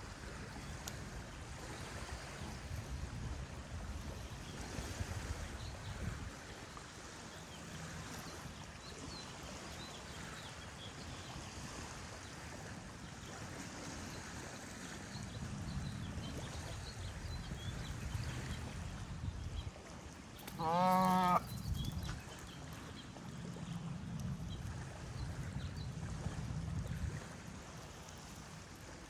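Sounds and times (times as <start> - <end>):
flowing water rushing: 0.0 - 29.0
small birds chirping: 20.4 - 23.2.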